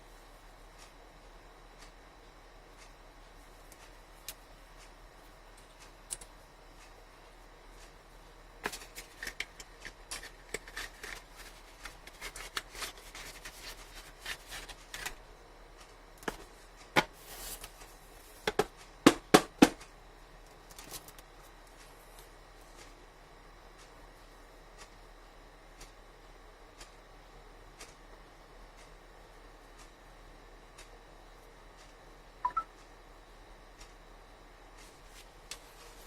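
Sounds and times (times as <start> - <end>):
packaging rustling and tapping: 8.6 - 15.2.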